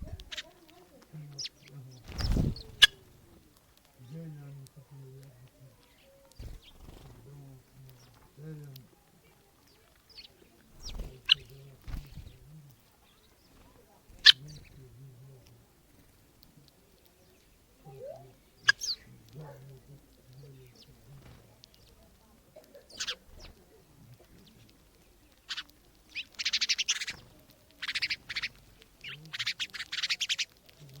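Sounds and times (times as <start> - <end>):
small birds chirping: 0.0 - 31.0
guinea fowl rattling calls: 2.2 - 3.1, 14.1 - 14.7, 18.1 - 20.9, 22.8 - 24.6, 25.3 - 30.7.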